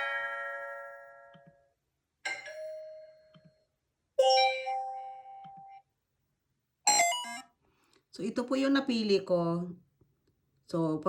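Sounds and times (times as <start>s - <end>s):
doorbell chime: 0.0s - 1.6s, 2.3s - 5.8s
two-note doorbell chime: 4.2s - 5.8s.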